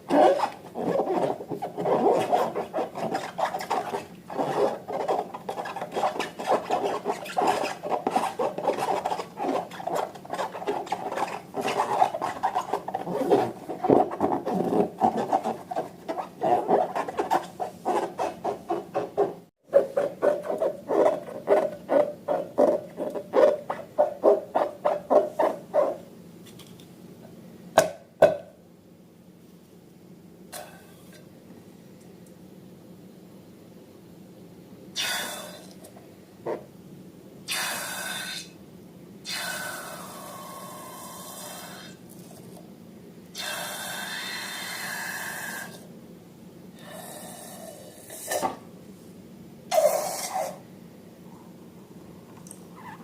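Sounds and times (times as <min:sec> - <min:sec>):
slime scraping and squishing: 0:00.1 - 0:25.7.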